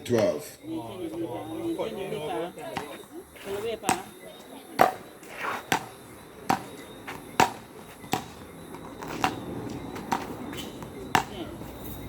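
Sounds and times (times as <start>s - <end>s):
ball bouncing on road: 2.6s - 12.0s
wooden paddles hitting ball: 4.8s - 11.4s.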